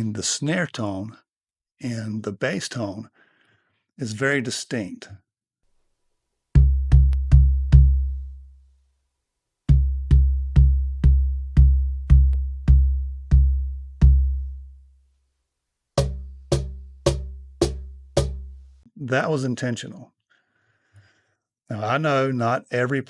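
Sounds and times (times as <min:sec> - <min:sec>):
cajon deep bass strikes: 0:06.6 - 0:08.3, 0:09.7 - 0:14.7, 0:16.0 - 0:18.6
cajon bright short strikes: 0:16.0 - 0:18.6.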